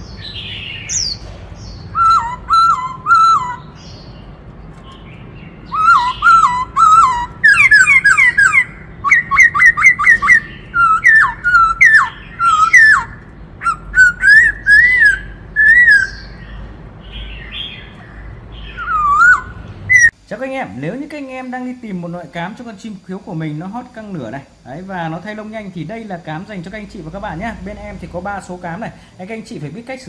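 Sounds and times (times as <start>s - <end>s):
bird singing whistled notes: 0.0s - 4.3s, 4.9s - 20.2s.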